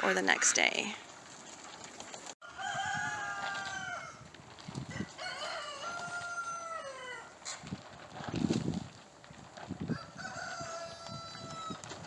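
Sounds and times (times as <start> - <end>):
rooster crowing: 2.4 - 4.2, 4.9 - 7.4, 9.9 - 11.8
low wind rumble: 2.5 - 12.0.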